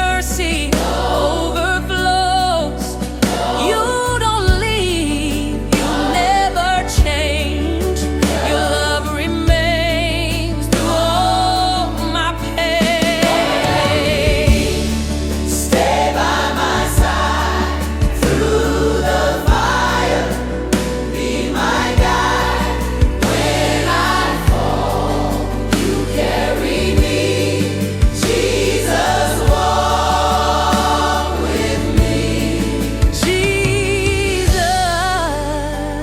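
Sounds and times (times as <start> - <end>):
choir and lead vocals singing: 0.0 - 36.0
sustained bass and keys: 0.0 - 36.0
slow drum beat: 3.0 - 3.9, 5.8 - 6.2, 12.9 - 35.0.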